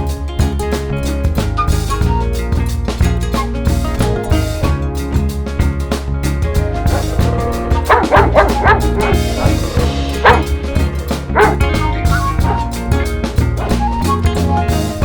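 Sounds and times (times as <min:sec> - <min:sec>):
background music with drum beat: 0:00.0 - 0:15.0
short yelping calls: 0:06.8 - 0:12.8.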